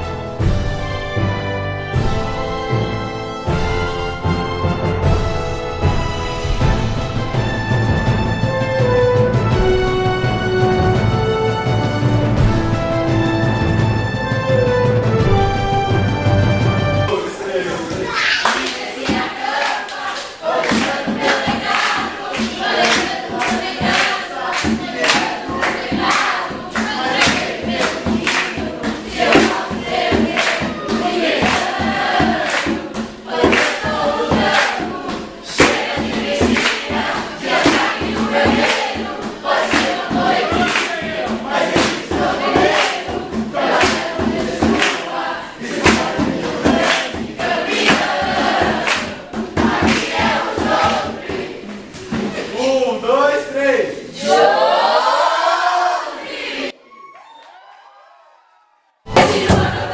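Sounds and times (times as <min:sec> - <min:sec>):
group of voices singing: 0:17.1 - 0:52.7, 0:54.0 - 0:56.8, 0:59.1 - 0:59.9
steady drum beat: 0:18.8 - 0:52.6, 0:59.1 - 0:59.9.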